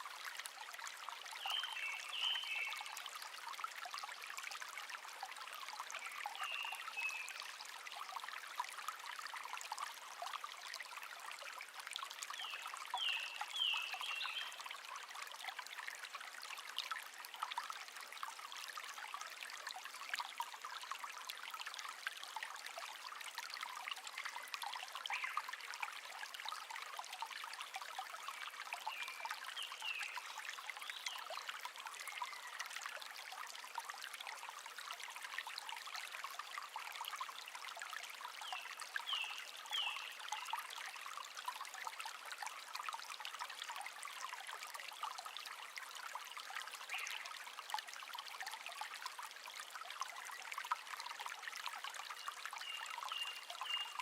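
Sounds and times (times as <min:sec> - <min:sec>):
brook babbling: 0:00.0 - 0:54.0.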